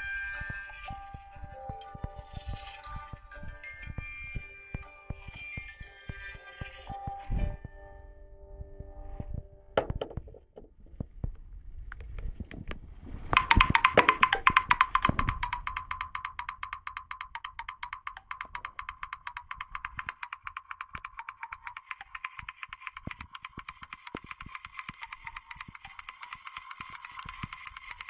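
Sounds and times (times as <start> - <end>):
phone ringtone pulsed tone: 0.0 - 9.4, 13.4 - 16.4
phone button clicks and taps: 13.4 - 28.0.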